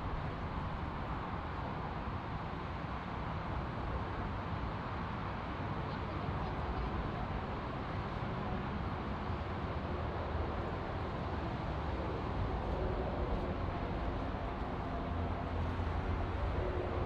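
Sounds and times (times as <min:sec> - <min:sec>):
jet airliner engines rumbling: 0:05.6 - 0:17.0.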